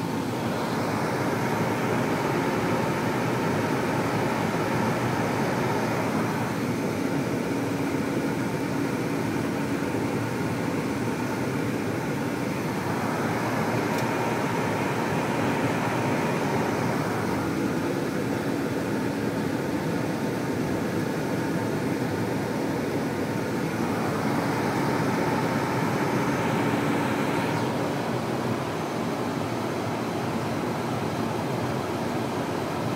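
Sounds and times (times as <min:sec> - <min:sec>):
faint hum: 0:00.0 - 0:19.1
bus engine and road noise: 0:00.0 - 0:32.9.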